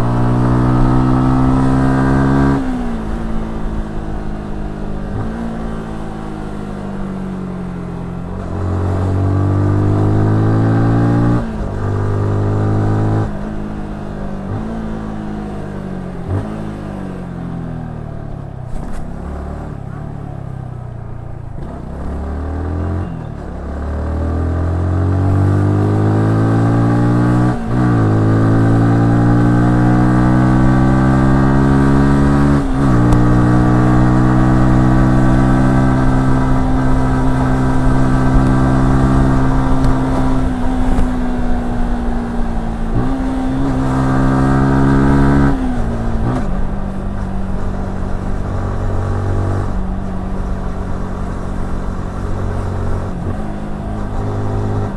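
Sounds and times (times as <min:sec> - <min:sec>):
motorcycle engine revving: 0:00.0 - 0:54.9.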